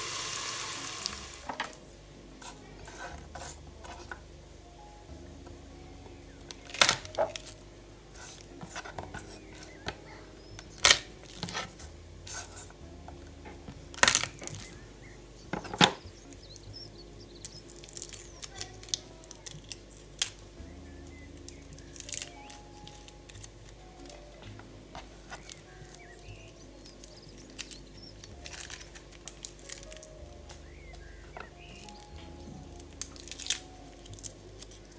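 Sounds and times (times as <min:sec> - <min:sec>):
soft background music: 0:00.0 - 0:34.9
tableware clinking and tapping: 0:02.4 - 0:04.3, 0:06.4 - 0:07.6, 0:08.2 - 0:14.8, 0:15.5 - 0:16.1.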